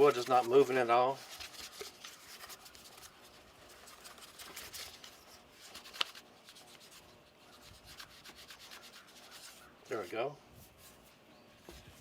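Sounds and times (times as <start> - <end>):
scratchy rubbing on wood: 6.7 - 9.7.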